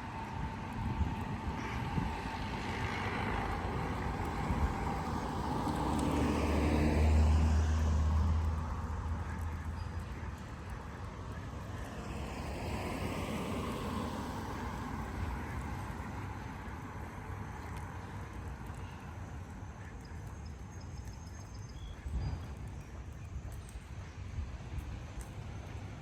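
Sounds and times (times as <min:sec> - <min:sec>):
car driving past: 0:02.6 - 0:09.2.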